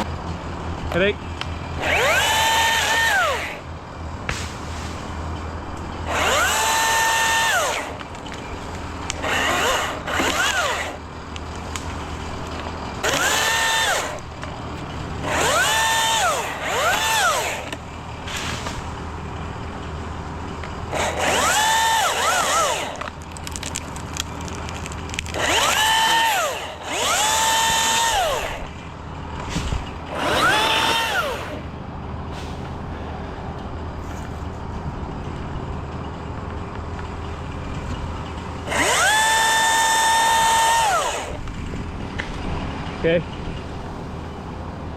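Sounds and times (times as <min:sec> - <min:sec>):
chainsaw revving: 0:01.8 - 0:03.6, 0:06.1 - 0:08.0, 0:09.2 - 0:11.0, 0:13.0 - 0:14.2, 0:15.2 - 0:17.8, 0:20.9 - 0:23.0, 0:25.3 - 0:28.7, 0:30.1 - 0:31.6, 0:38.6 - 0:41.4.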